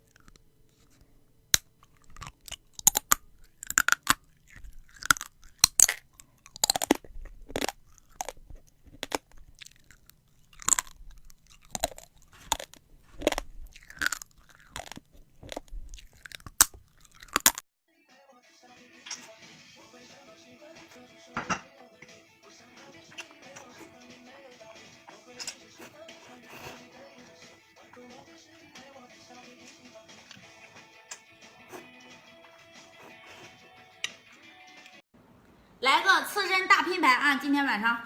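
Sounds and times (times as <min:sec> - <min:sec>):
person chewing food: 0:00.0 - 0:17.6, 0:22.8 - 0:28.9, 0:29.6 - 0:34.2.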